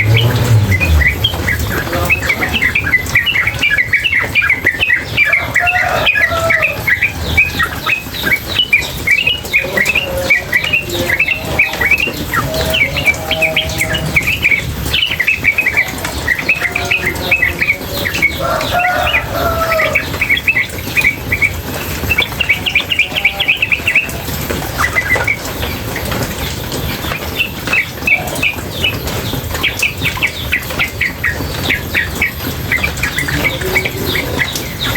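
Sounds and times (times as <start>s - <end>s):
bulbul chattering chirps: 0.0s - 34.9s
running water: 0.0s - 34.9s.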